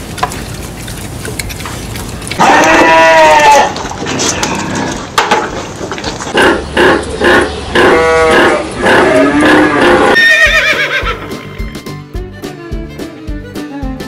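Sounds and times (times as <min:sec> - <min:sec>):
farm animals calling: 0:01.6 - 0:05.1, 0:06.2 - 0:11.7.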